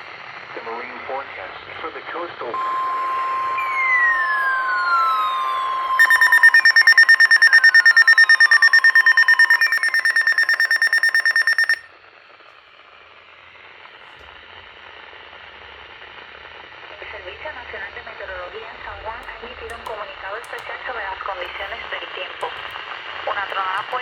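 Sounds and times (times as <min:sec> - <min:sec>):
faint radio hiss: 0:00.5 - 0:02.5, 0:16.7 - 0:24.0
falling tones: 0:02.6 - 0:11.8
steady warning tone: 0:02.6 - 0:11.8, 0:19.0 - 0:20.8, 0:23.5 - 0:24.0
rapidly pulsing alarm beep: 0:02.6 - 0:11.9, 0:23.5 - 0:24.0.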